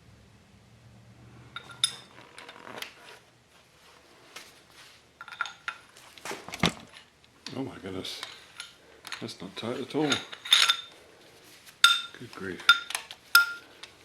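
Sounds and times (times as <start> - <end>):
metal tool clinking on nuts: 1.6 - 2.6, 8.1 - 11.0, 11.8 - 13.9.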